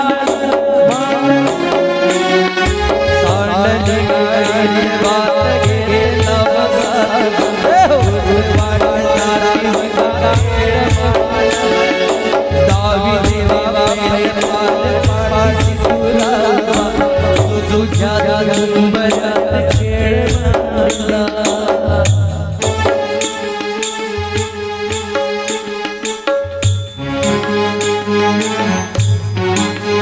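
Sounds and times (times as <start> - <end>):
jingling rattling percussion: 0.1 - 30.0
hand drum beat: 5.0 - 23.2.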